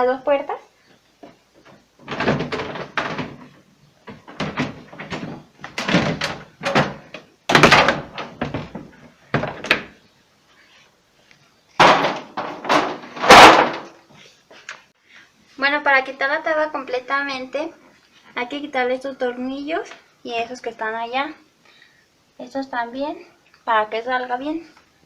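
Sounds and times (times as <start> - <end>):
refrigerator door clunks and thumps: 2.0 - 3.5, 4.1 - 8.8.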